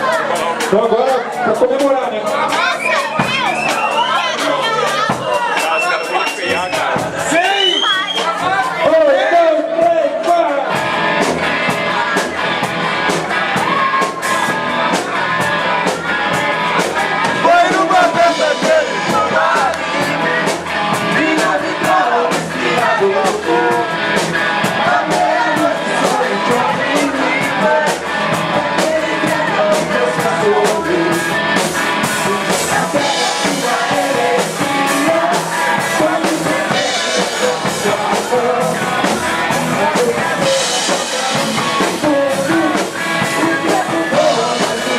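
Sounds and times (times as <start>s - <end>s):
drum kit: 0.0s - 44.9s
electric guitar: 9.7s - 44.9s
person singing: 13.1s - 44.9s.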